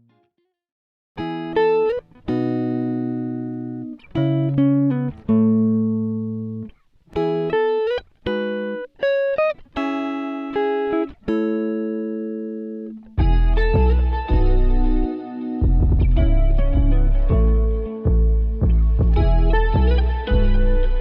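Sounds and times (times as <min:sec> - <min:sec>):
plucked guitar melody: 0:01.2 - 0:21.0
bass: 0:13.2 - 0:21.0.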